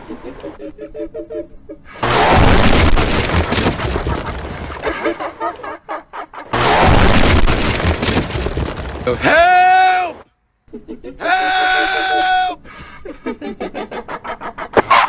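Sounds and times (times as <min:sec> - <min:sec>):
loud booming blasts: 0:02.0 - 0:05.0, 0:06.6 - 0:09.3.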